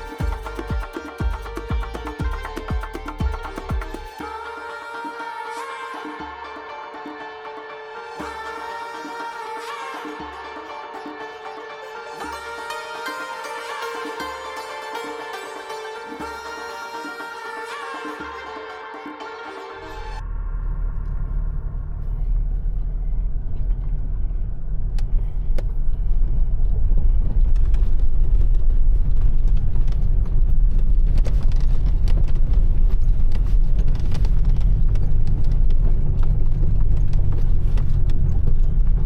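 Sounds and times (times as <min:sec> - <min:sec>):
vehicle engine rumble: 0:20.2 - 0:39.0.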